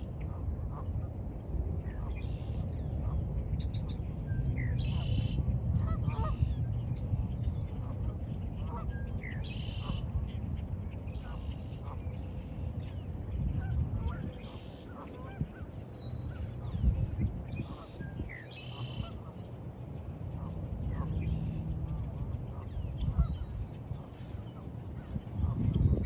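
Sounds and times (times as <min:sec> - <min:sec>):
steady low rumble: 0:00.0 - 0:26.0
geese honking: 0:07.8 - 0:10.1, 0:17.6 - 0:19.5.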